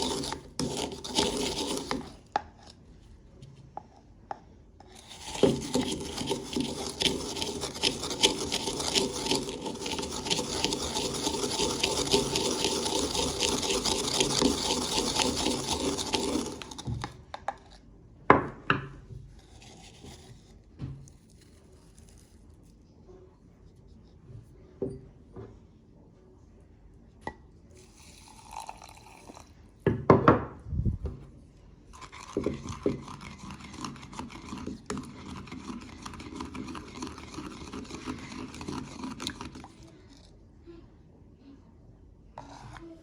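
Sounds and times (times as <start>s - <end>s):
crisps crunching in spice grinder: 0.0s - 2.3s, 4.9s - 17.2s, 27.8s - 29.5s, 31.9s - 39.8s.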